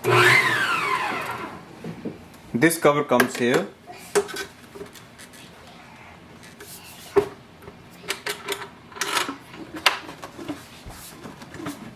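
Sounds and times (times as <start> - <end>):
mixer parts clicking and knocking: 3.1 - 5.0, 8.0 - 10.6.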